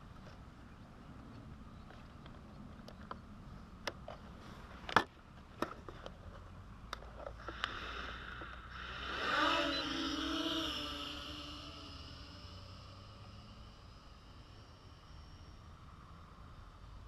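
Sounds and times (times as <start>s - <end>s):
motor-like whine: 7.3s - 17.0s.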